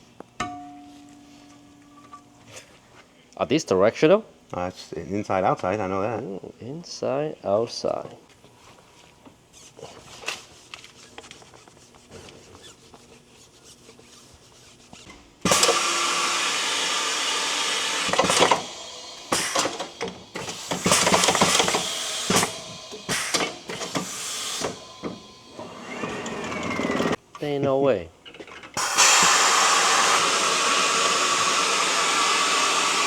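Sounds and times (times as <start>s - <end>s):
loud air hiss: 15.5s - 25.0s, 28.8s - 33.0s.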